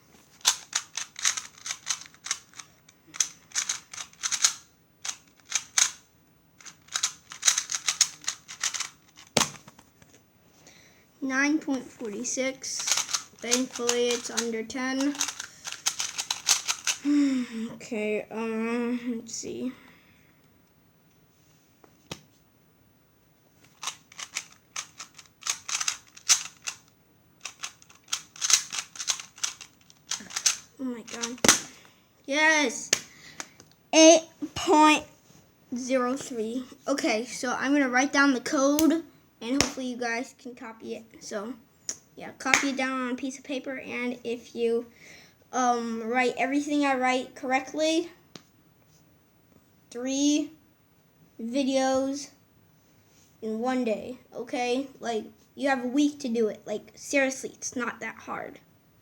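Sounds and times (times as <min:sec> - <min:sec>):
plastic puzzle cube clicks: 0:00.4 - 0:06.0, 0:06.6 - 0:09.6, 0:12.8 - 0:14.5, 0:15.1 - 0:17.0, 0:23.8 - 0:26.8, 0:27.4 - 0:31.8.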